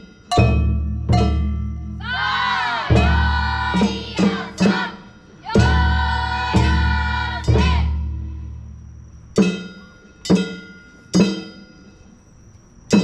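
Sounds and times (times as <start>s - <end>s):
heavy drum strikes: 0.3s - 8.3s
group of voices chanting: 2.0s - 8.0s.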